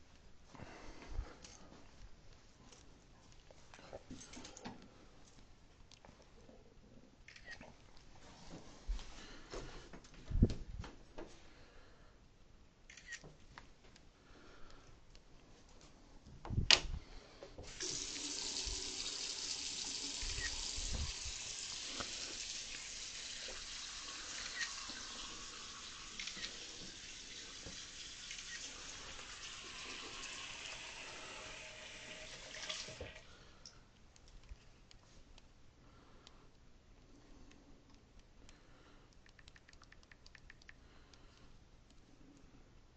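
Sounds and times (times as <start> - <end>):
faucet running: 17.6 - 33.3.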